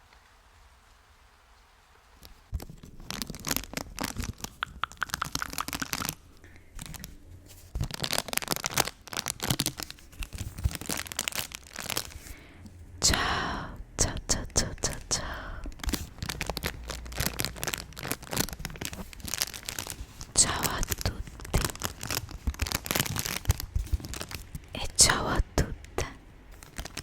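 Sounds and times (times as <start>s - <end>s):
paper crumpling: 2.5s - 12.5s, 14.7s - 24.8s, 26.0s - 27.0s.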